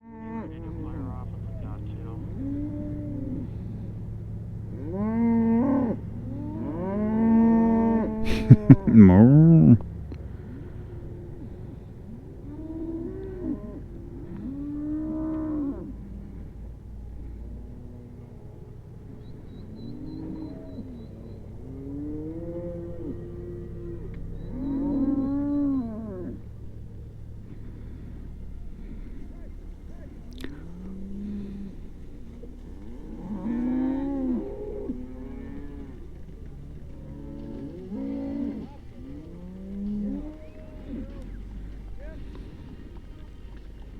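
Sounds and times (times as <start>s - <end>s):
cattle mooing: 0.0s - 43.8s.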